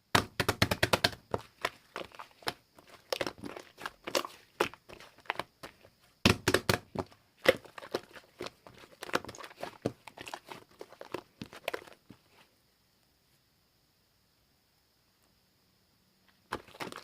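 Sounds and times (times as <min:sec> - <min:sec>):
slime squished with sticky pops: 0:00.1 - 0:12.1, 0:16.5 - 0:17.0.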